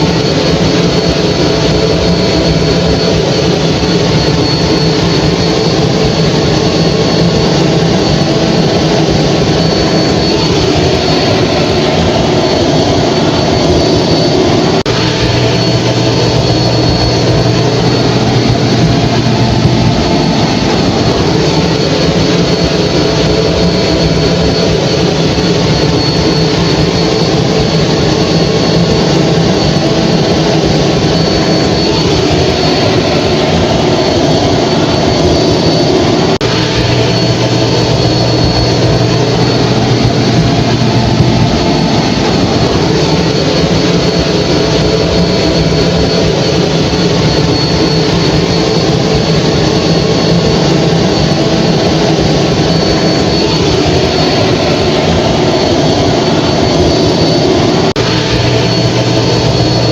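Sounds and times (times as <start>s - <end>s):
hair dryer running: 0.8s - 27.9s.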